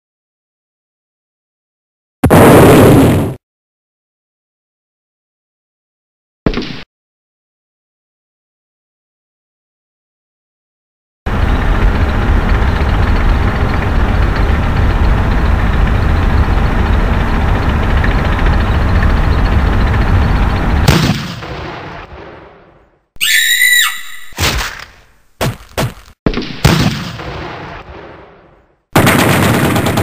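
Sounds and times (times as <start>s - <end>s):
gunfire and explosion blasts: 2.2s - 3.4s, 20.8s - 23.0s, 25.4s - 30.0s.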